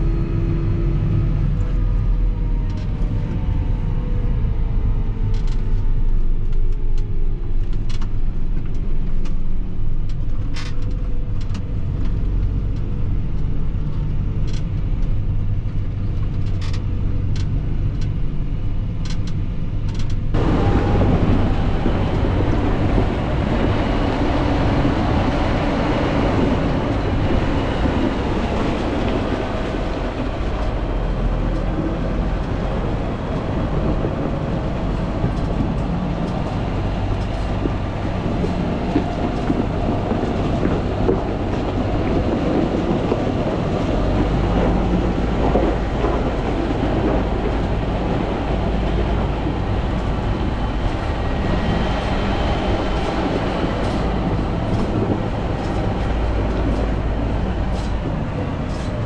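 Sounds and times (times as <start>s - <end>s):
tractor engine running under load: 0.0s - 59.0s
loud rushing noise: 20.3s - 59.0s.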